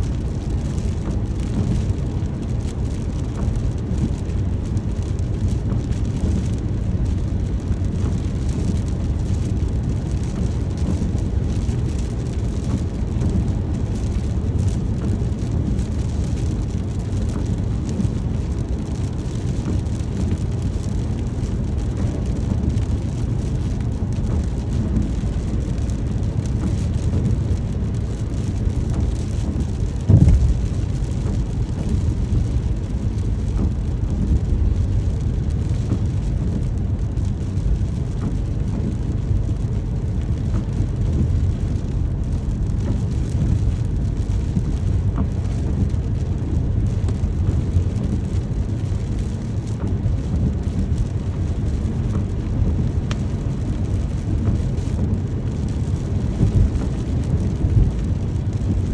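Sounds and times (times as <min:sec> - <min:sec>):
steady rain: 0:00.0 - 0:58.9
low thump: 0:30.0 - 0:30.8.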